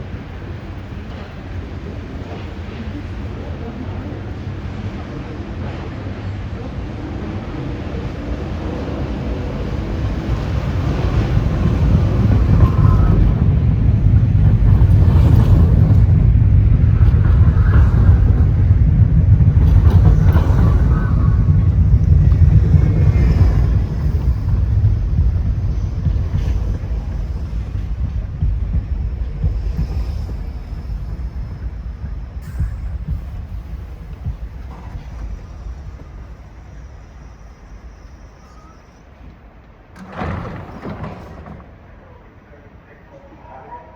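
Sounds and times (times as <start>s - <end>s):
wind buffeting microphone: 0.0s - 37.9s
train rumbling on elevated track: 0.0s - 43.9s.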